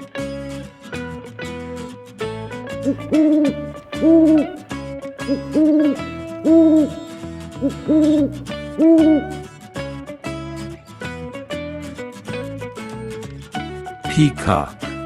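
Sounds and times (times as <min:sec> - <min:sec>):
guitar music: 0:00.0 - 0:15.0
owl hooting: 0:02.9 - 0:04.6, 0:05.3 - 0:09.5.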